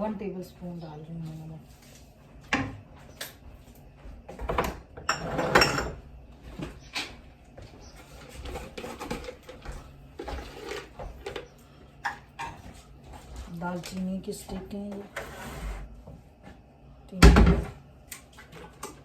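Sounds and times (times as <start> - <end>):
scraping and rustling: 7.8 - 11.5.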